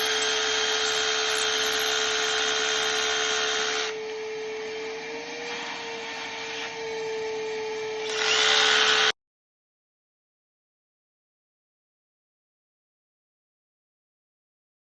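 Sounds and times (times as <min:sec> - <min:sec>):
rotary hammer drilling into concrete: 0:00.0 - 0:03.9, 0:08.0 - 0:09.1.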